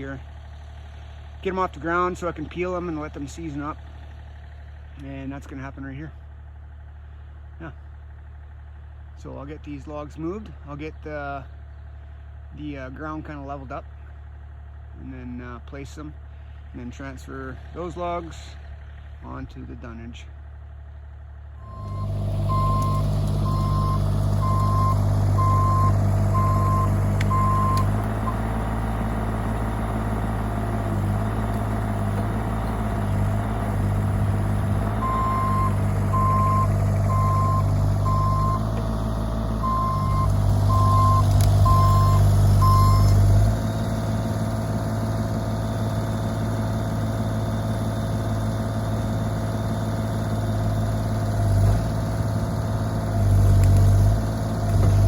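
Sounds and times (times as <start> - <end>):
excavator diesel engine: 0.0 - 55.0
travel alarm beeping: 21.6 - 28.4, 35.0 - 38.7, 39.6 - 43.1.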